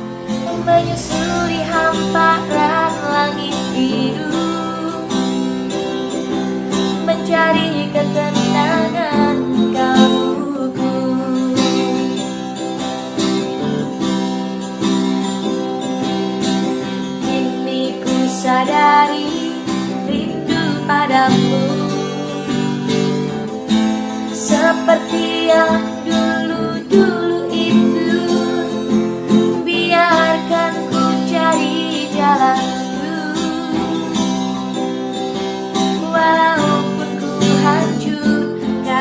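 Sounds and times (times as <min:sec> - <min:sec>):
gliding melody line: 0:00.0 - 0:14.7
acoustic guitar strumming chords: 0:00.0 - 0:39.0.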